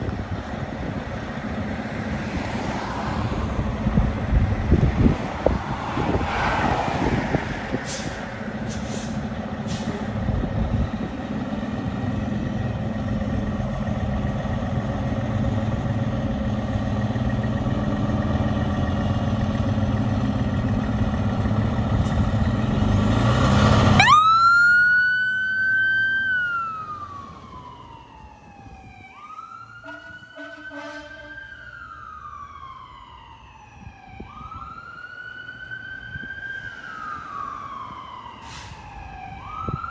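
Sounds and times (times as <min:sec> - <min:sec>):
truck engine: 0:00.0 - 0:33.4, 0:34.5 - 0:39.8
mechanical siren wailing: 0:23.9 - 0:39.9
air horns blasting: 0:29.8 - 0:31.5.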